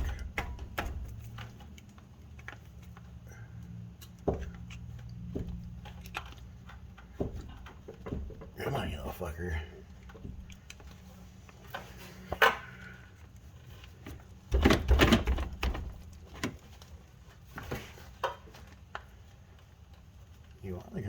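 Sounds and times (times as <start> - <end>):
knocking and scraping: 0.0 - 2.7, 4.0 - 12.8, 13.6 - 18.8.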